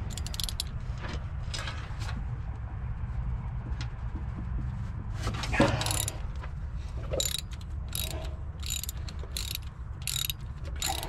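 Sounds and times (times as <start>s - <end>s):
ratchet wrench clicking: 0.0s - 0.7s, 5.8s - 6.2s, 7.1s - 11.0s.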